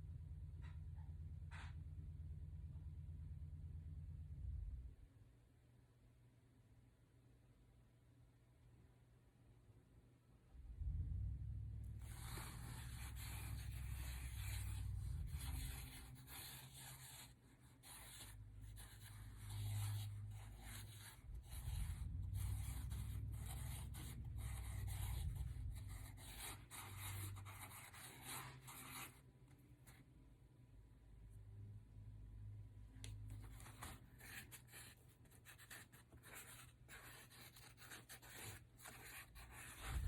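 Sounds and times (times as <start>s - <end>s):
low rumble: 0.0s - 5.1s, 10.5s - 16.0s, 21.2s - 26.3s
marker rubbing on paper: 12.0s - 29.2s, 33.3s - 40.0s.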